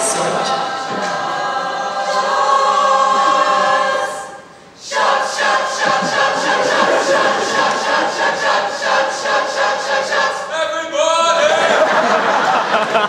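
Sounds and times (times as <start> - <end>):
choir singing: 0.0 - 10.7, 11.3 - 13.0.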